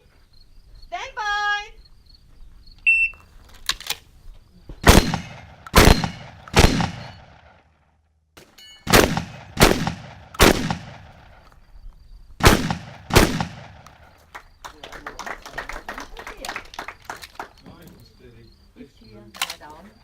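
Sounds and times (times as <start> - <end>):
shotgun shots echoing: 4.8 - 7.6, 8.4 - 11.5, 12.4 - 14.2.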